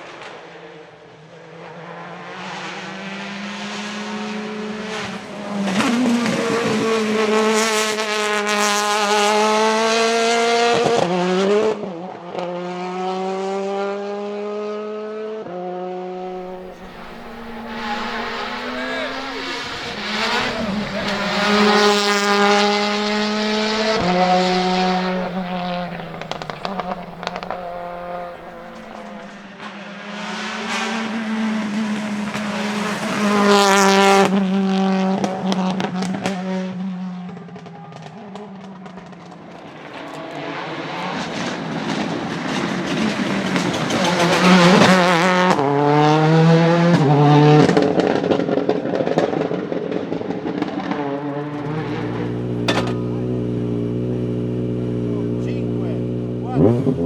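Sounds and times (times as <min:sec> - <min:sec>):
rally car engine revving: 0:16.3 - 0:29.4, 0:42.7 - 0:47.8, 0:50.8 - 0:57.0.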